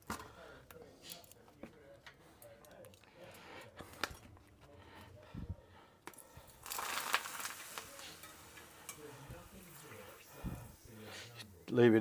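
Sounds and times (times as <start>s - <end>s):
poppadoms crackling in hot oil: 6.0s - 12.0s.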